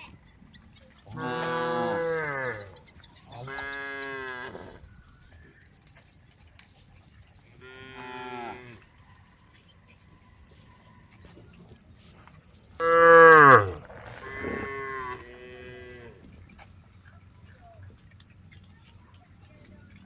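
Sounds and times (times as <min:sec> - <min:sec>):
cows mooing: 0:01.1 - 0:02.8, 0:12.8 - 0:16.2.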